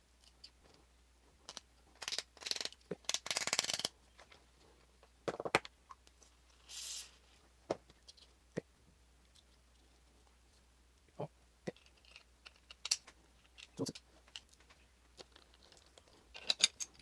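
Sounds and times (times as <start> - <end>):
small parts clicking: 1.5 - 3.9, 11.7 - 14.6, 15.2 - 17.0.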